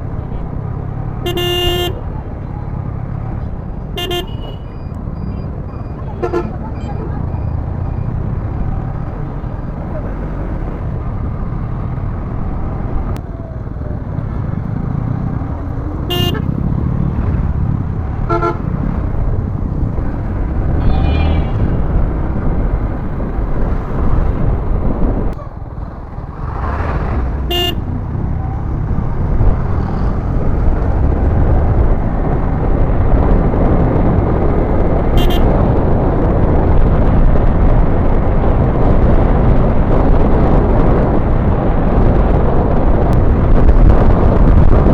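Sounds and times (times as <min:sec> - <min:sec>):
wind noise: 0:00.0 - 0:44.9
vehicle horn toots: 0:01.2 - 0:02.0, 0:04.0 - 0:04.8, 0:06.2 - 0:06.6, 0:16.1 - 0:16.5, 0:18.3 - 0:18.7, 0:27.5 - 0:27.9, 0:35.2 - 0:35.5.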